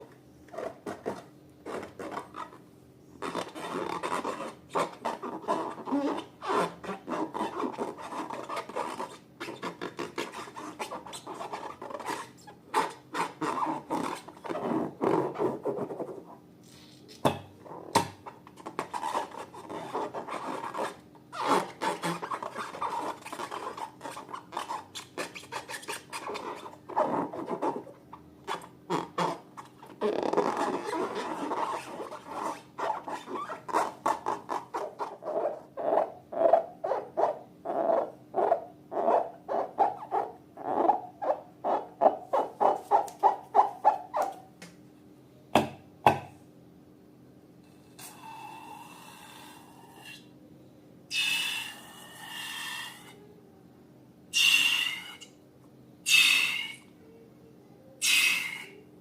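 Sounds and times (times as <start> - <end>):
slime rubbing and scraping: 0.5 - 2.6, 3.2 - 17.1, 17.7 - 37.4, 38.0 - 44.4.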